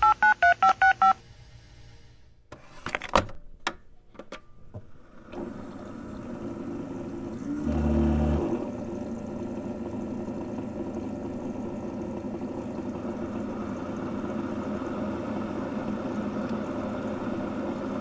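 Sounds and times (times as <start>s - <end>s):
touch-tone dialing beeps: 0.0s - 1.2s
low pump buzz: 4.6s - 18.0s
coffee maker whirring hum: 4.7s - 18.0s.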